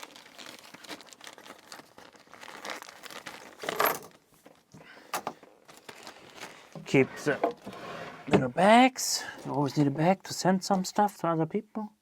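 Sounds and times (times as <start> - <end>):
plastic bags crinkling: 0.0 - 4.7, 5.4 - 7.7.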